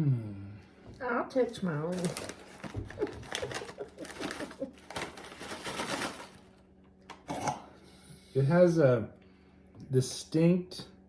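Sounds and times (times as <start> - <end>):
plastic snack bag crinkling: 1.8 - 6.6.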